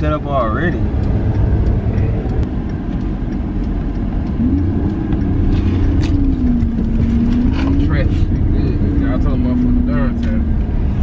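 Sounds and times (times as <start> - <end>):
motor vehicle running: 0.0 - 11.0
wavering droning tone: 4.4 - 10.2.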